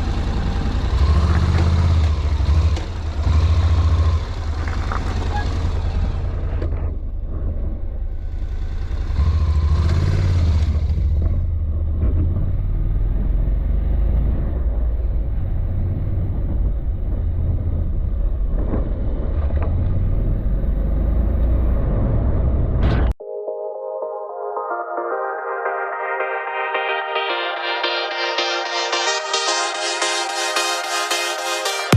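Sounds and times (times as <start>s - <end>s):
motorcycle engine rumble: 0.0s - 23.2s
electronic music: 23.2s - 31.9s.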